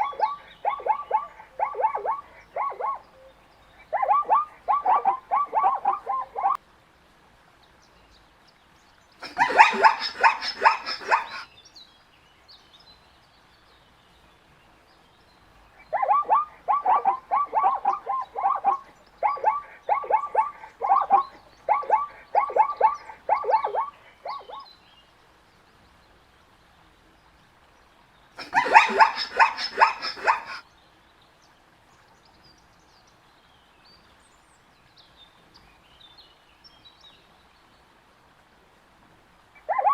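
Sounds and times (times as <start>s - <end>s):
zebra yelping calls: 0.0s - 3.2s, 3.8s - 6.6s, 9.2s - 11.4s, 15.9s - 24.6s, 28.4s - 30.6s, 39.6s - 39.9s.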